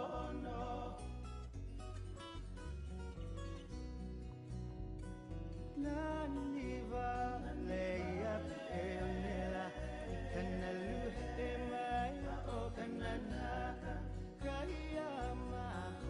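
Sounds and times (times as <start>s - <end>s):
person singing: 0.0s - 1.0s, 5.8s - 16.0s
steady bass line: 0.0s - 16.0s.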